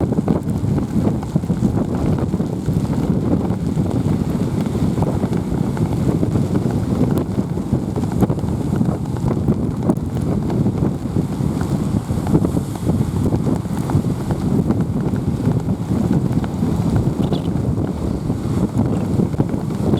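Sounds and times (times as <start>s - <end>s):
wind buffeting microphone: 0.0s - 19.9s.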